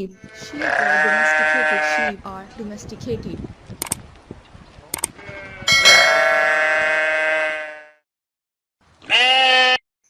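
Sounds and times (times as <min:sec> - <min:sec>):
sheep bleating: 0:00.1 - 0:02.6, 0:05.2 - 0:08.0, 0:09.0 - 0:09.8.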